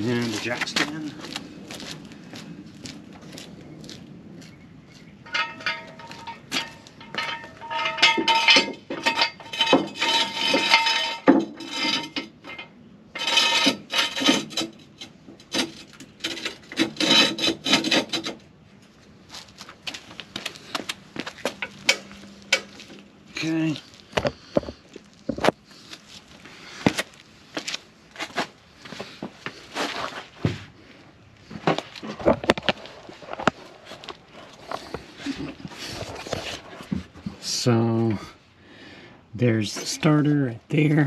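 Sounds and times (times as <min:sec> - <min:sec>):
metallic knocks ringing: 0:05.2 - 0:14.6
metal scraping and clinking: 0:05.2 - 0:19.0, 0:20.9 - 0:25.6.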